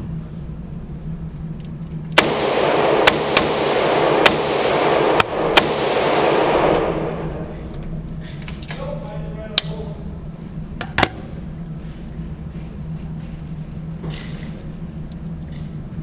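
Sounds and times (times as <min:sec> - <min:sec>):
pistol gunshots indoors: 0:02.2 - 0:08.0
loud rushing noise: 0:02.2 - 0:08.4.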